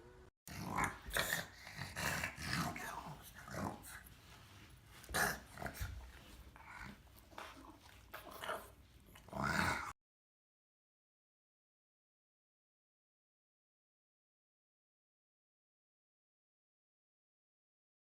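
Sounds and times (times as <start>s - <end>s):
dog growling: 0.5s - 10.0s.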